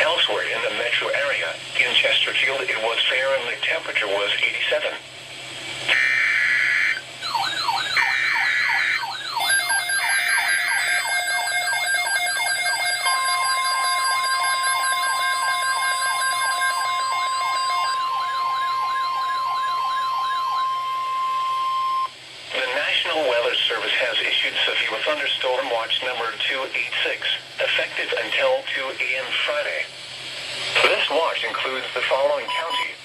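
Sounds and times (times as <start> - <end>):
screeching data bursts: 5.9 - 22.1
sweeping siren: 5.9 - 22.1
steady warning alarm tone: 5.9 - 22.2, 32.4 - 33.0.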